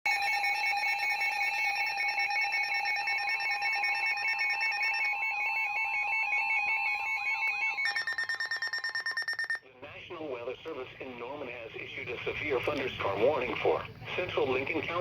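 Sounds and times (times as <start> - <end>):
rapidly pulsing alarm beep: 0.1 - 9.6
steady attention tones: 0.1 - 9.6.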